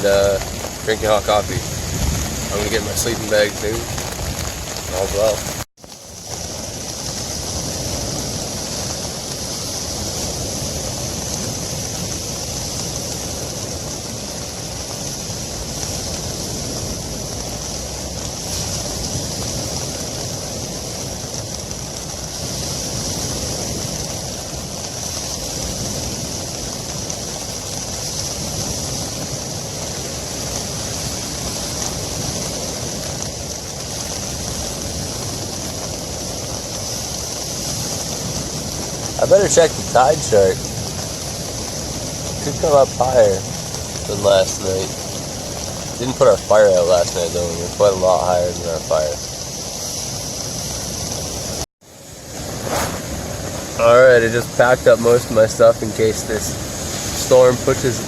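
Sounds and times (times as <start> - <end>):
ocean surf breaking: 0.0 - 58.0
wind blowing: 0.0 - 58.0.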